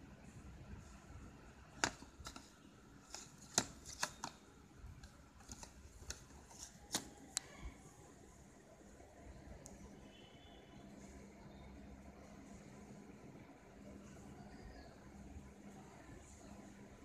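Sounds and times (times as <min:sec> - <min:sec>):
packaging clicks: 0:01.8 - 0:04.4, 0:05.0 - 0:07.5.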